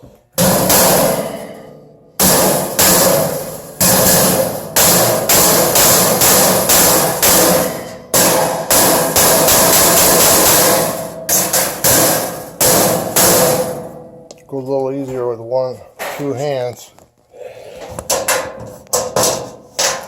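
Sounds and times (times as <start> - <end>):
hammer striking sheet metal: 0.4 - 14.3, 18.1 - 20.0.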